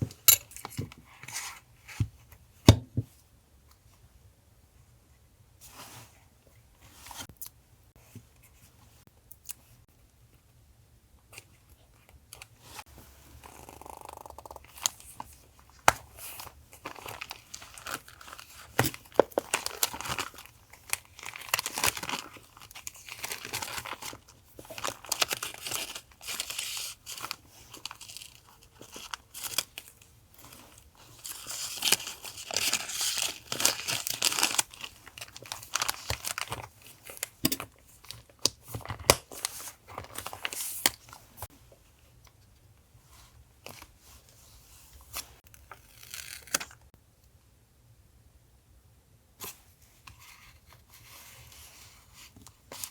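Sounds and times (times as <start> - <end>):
paper rustling and tearing: 30.4 - 37.3.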